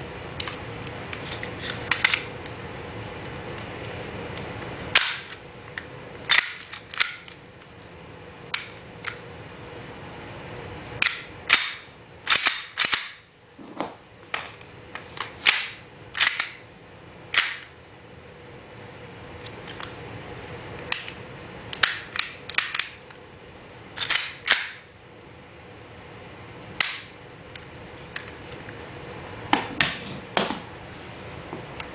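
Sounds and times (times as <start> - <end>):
pistol parts clicking: 11.0 - 13.2, 15.2 - 16.6, 24.0 - 24.8.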